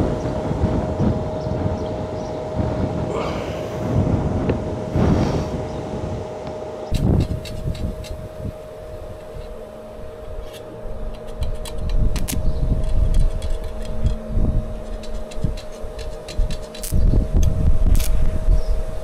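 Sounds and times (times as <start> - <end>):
steady hum: 0.0 - 19.0
wind buffeting microphone: 0.0 - 19.0
sharp clicks and crackles: 10.4 - 14.2, 14.8 - 18.2.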